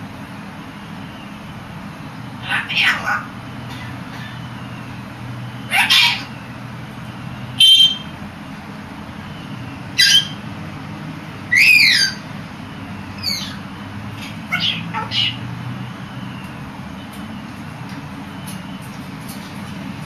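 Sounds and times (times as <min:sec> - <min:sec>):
pet bird squawking and whistling: 0:02.4 - 0:04.4, 0:05.7 - 0:06.4, 0:10.0 - 0:10.4, 0:11.5 - 0:12.2, 0:13.2 - 0:13.6, 0:14.2 - 0:15.4.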